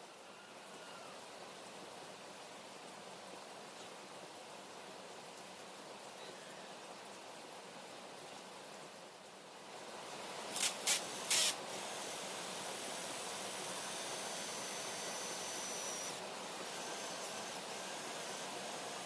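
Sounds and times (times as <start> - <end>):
steady hiss with whistle: 0.0 - 1.2, 10.6 - 16.2
spraying hiss bursts: 10.5 - 19.0.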